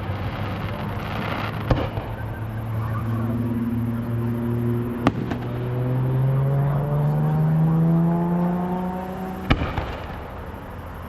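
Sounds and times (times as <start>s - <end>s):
firework bangs: 0.0s - 7.3s, 8.1s - 11.0s
vehicle engine speeding up: 2.4s - 9.8s.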